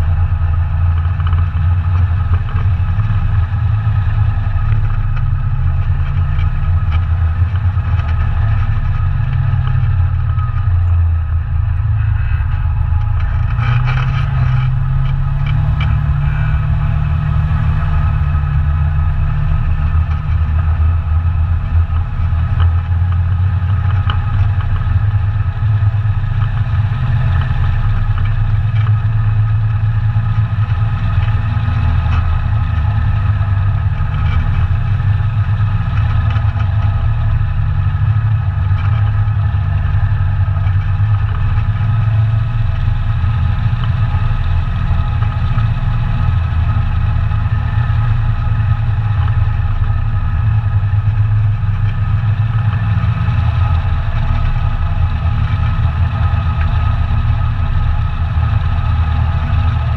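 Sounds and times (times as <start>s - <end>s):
quad bike engine running: 0.0s - 59.9s.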